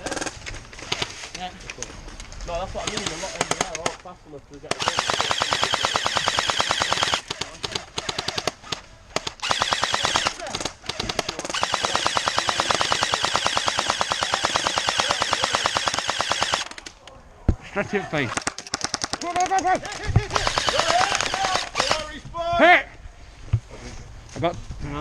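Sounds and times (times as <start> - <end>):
airsoft gun firing bursts: 2.8 - 4.0, 4.7 - 16.8, 20.3 - 22.0.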